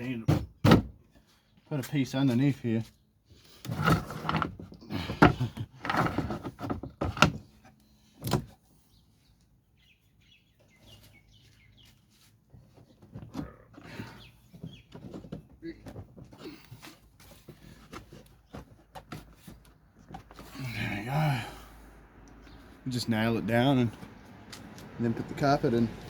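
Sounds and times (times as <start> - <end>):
plywood scraping and shuffling: 3.4 - 8.6, 10.8 - 20.9.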